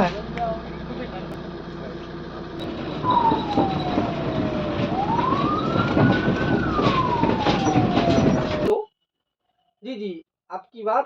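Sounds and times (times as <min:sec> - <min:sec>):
road noise and vehicle rattle: 0:00.0 - 0:08.7
ambulance siren wailing: 0:02.6 - 0:08.8.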